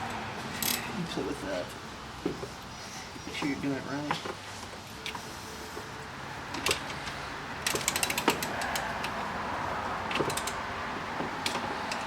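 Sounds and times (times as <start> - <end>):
ratchet clicking: 7.6 - 9.2, 10.1 - 10.6.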